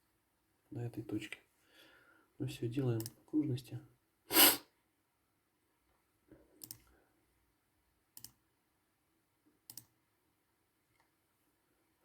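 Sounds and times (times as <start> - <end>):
computer mouse clicks: 6.6 - 6.9, 8.2 - 8.4, 9.7 - 10.0.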